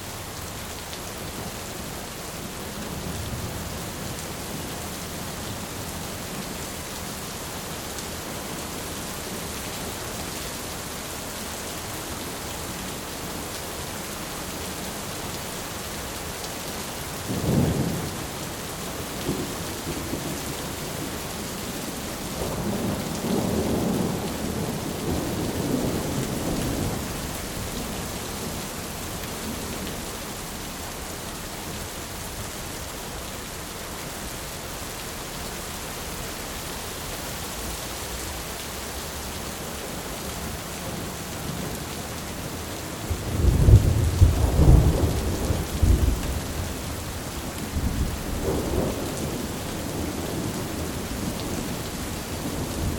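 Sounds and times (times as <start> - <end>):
heavy rain: 0.0 - 52.9
rolling thunder rumble: 42.5 - 52.9
sharp thunderclap: 43.3 - 46.4.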